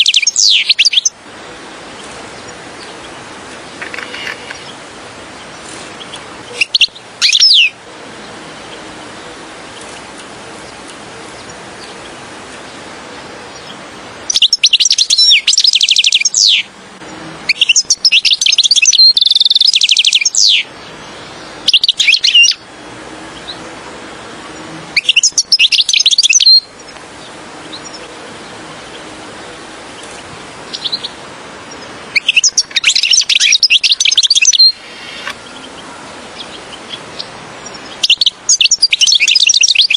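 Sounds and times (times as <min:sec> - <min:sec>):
goldfinch twittering song: 0:00.0 - 0:01.2, 0:05.4 - 0:12.8, 0:13.5 - 0:16.7, 0:17.5 - 0:22.6, 0:24.6 - 0:29.1, 0:29.9 - 0:39.9
faint hiss: 0:00.0 - 0:39.9.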